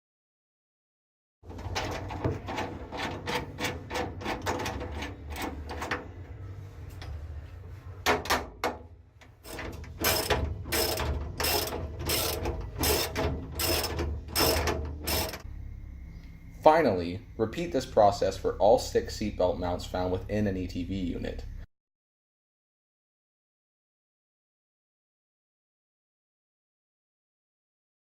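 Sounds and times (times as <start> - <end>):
ratchet wrench clicking: 9.4 - 15.4.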